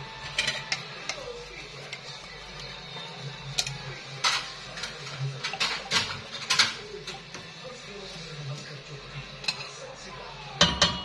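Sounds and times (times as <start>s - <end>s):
cookware knocking and clinking: 0.2s - 1.3s, 3.6s - 7.5s, 10.6s - 11.0s.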